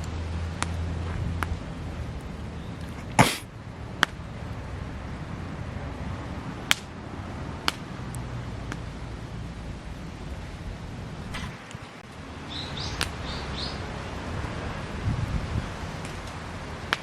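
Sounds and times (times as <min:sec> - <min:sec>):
wood fire crackling: 0:00.6 - 0:05.2
sharp fire pops: 0:11.2 - 0:13.2.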